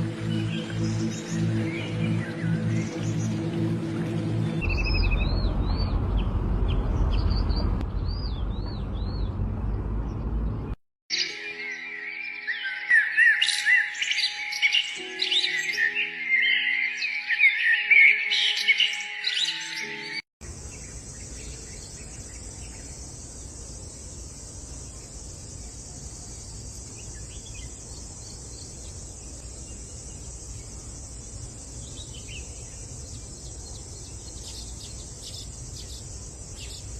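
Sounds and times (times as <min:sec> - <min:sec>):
low rumble: 0:00.0 - 0:10.8
music with birdsong: 0:00.0 - 0:23.0, 0:25.6 - 0:36.9
high-pitched insect chorus: 0:20.4 - 0:36.9.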